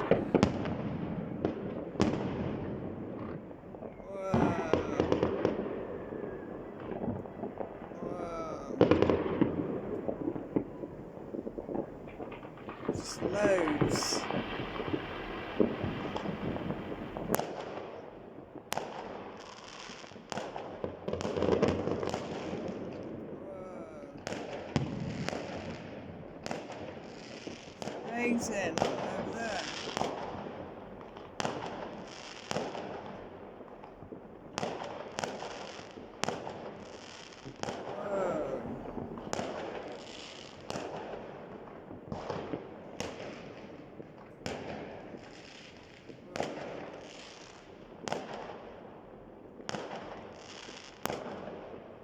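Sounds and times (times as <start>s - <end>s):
rumble of distant explosions: 0.0s - 17.8s, 37.5s - 45.2s
fireworks cracking bangs: 0.0s - 52.0s.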